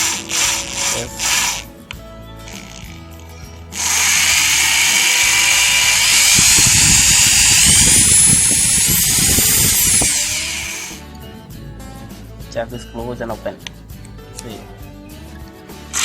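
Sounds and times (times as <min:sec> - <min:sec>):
electric drill motor whining: 0:00.0 - 0:01.7, 0:02.5 - 0:03.1, 0:03.7 - 0:11.0.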